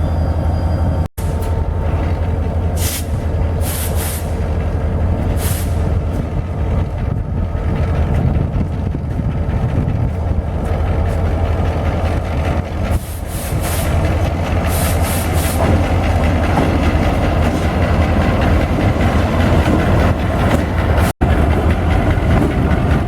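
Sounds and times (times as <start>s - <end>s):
locomotive engine rumble: 0.0s - 23.0s
short hisses: 2.8s - 4.4s.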